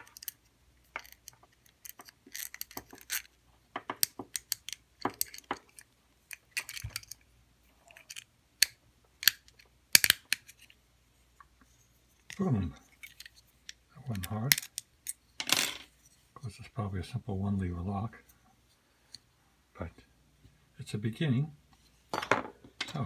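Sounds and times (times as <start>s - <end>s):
metal pick clicking in lock: 8.0s - 10.6s.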